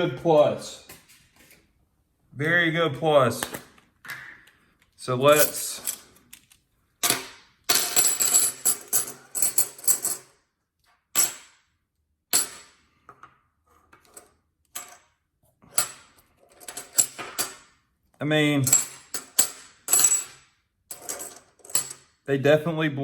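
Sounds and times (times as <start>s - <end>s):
coins clinking with metallic ring: 5.3s - 6.1s, 7.7s - 10.3s, 14.0s - 15.1s, 15.7s - 17.7s, 18.6s - 22.1s.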